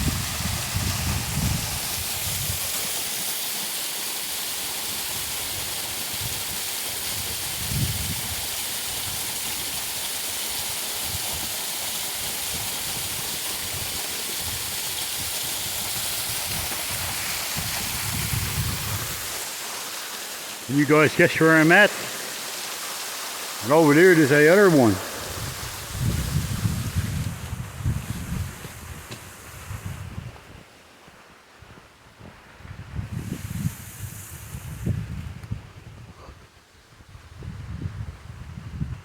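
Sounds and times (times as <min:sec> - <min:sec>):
waterfall rushing: 0:00.0 - 0:07.0, 0:08.6 - 0:27.3.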